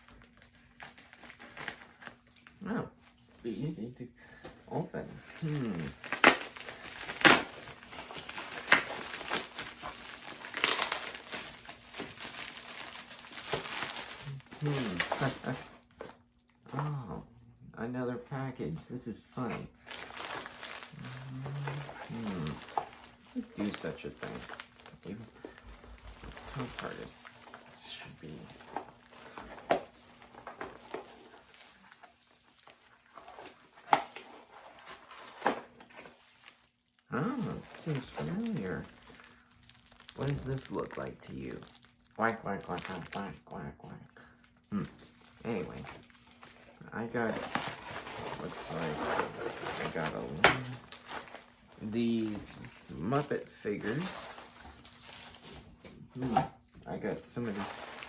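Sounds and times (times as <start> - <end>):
package wrapping crinkling: 0.0 - 2.6, 5.1 - 16.2, 19.8 - 43.3, 44.3 - 56.4, 57.4 - 58.0
sharp packaging snaps: 5.4 - 15.3.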